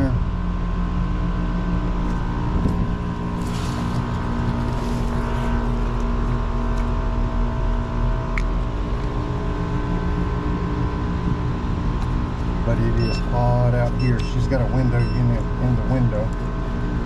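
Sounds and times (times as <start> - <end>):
air conditioner unit humming: 0.0 - 17.0.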